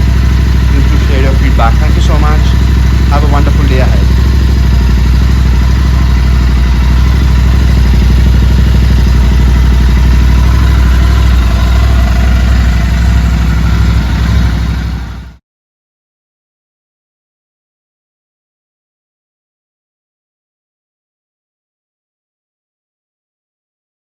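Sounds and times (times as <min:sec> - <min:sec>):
motorcycle engine idling: 0:00.0 - 0:15.4.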